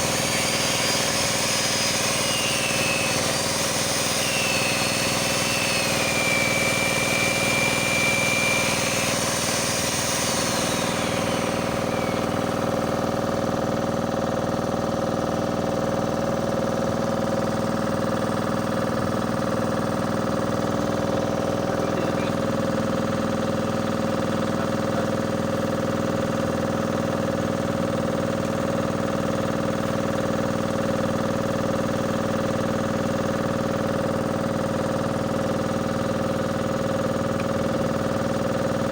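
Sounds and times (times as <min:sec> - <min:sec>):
high thin whine: 0:00.0 - 0:13.4
engine running: 0:00.0 - 0:38.9.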